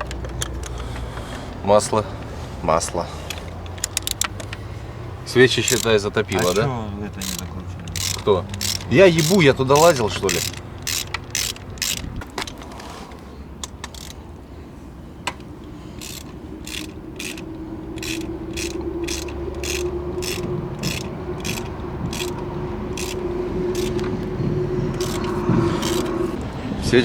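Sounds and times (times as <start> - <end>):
ratchet wrench clicking: 0.0 - 12.7, 13.6 - 14.2, 15.2 - 26.4
steady hum: 15.8 - 26.8.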